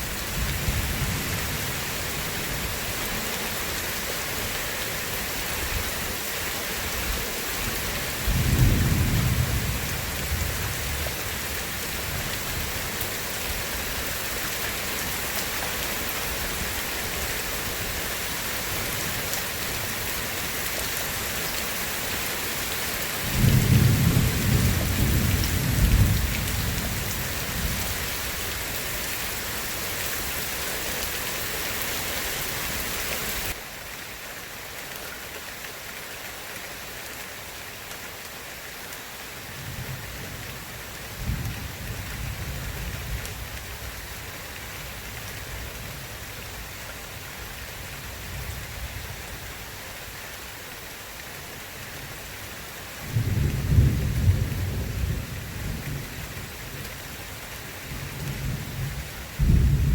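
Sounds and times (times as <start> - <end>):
heavy rain hissing: 0.0 - 34.7
thunder rumbling: 58.4 - 59.9.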